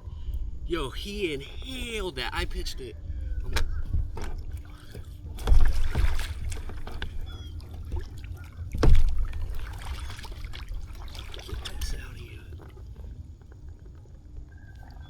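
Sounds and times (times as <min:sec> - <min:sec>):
thumps on plastic kayak: 0:03.4 - 0:09.7.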